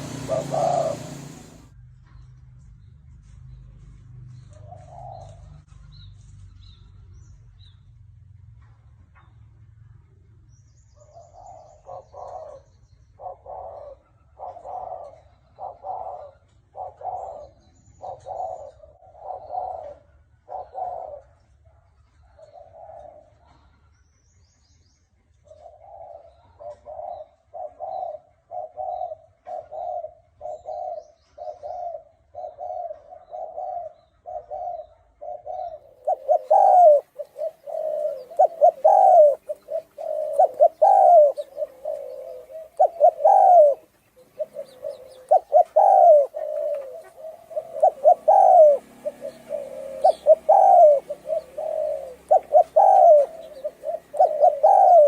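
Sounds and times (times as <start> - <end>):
dove cooing: 0.0 - 1.7, 4.6 - 5.6, 11.1 - 21.4, 22.4 - 23.6, 25.4 - 55.0.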